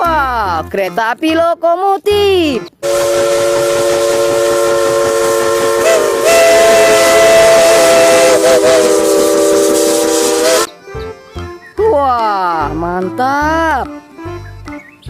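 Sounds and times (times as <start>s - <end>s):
steam whistle blowing: 2.8s - 10.7s
hiss of steam: 7.0s - 10.7s.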